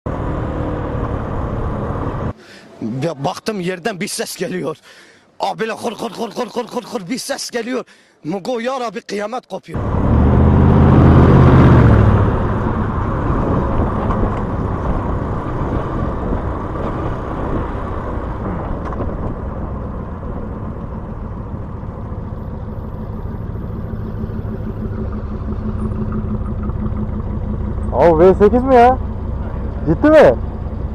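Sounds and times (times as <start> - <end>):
engine revving: 9.8 - 30.9
engine idling with rattle: 18.4 - 30.9.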